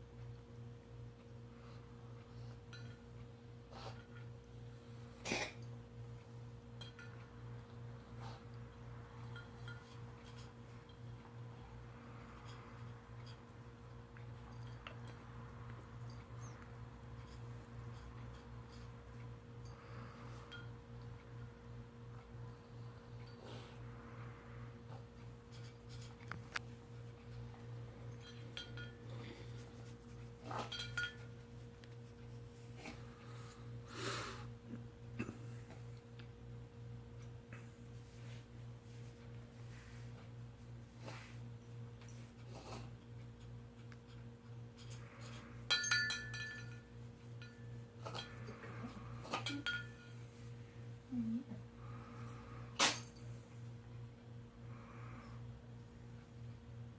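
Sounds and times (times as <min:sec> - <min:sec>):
steady low hum: 0:00.0 - 0:56.9
clinks against dish: 0:02.7 - 0:03.0, 0:06.8 - 0:07.2, 0:28.1 - 0:29.1, 0:30.6 - 0:31.3, 0:45.7 - 0:48.6, 0:49.3 - 0:50.1.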